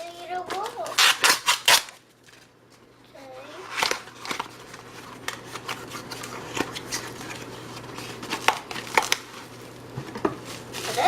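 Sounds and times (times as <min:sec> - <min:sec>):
packaging clicks and crinkles: 0:03.7 - 0:09.8.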